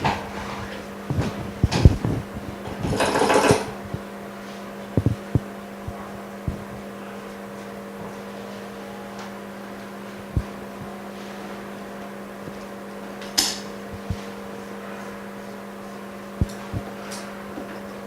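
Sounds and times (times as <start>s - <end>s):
low machine hum: 0.0s - 18.0s
tools clicking and knocking: 2.8s - 3.7s.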